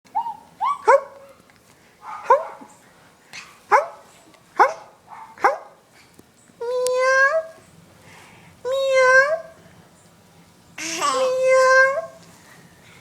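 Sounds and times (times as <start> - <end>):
dog barking: 0.2 - 1.4, 2.0 - 2.7, 3.7 - 5.8.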